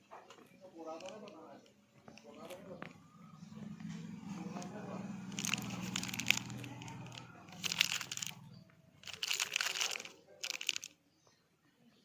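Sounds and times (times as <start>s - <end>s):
packaging crinkling: 0.9s - 1.4s, 4.4s - 8.4s, 9.0s - 11.0s.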